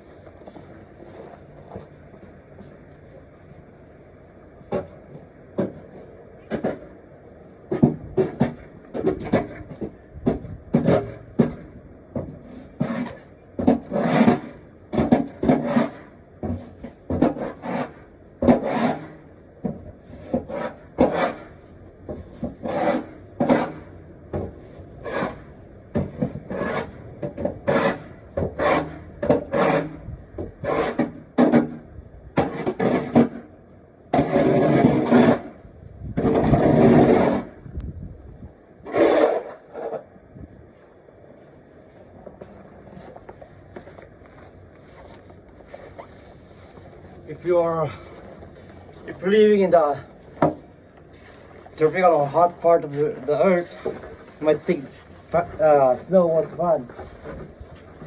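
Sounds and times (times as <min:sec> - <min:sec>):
snow shovel scraping snow: 0:13.9 - 0:14.6, 0:15.4 - 0:19.3, 0:20.0 - 0:23.9, 0:26.1 - 0:31.6, 0:32.4 - 0:33.4, 0:34.2 - 0:35.6, 0:36.2 - 0:37.6, 0:38.8 - 0:40.0, 0:44.8 - 0:50.1, 0:51.1 - 0:58.0.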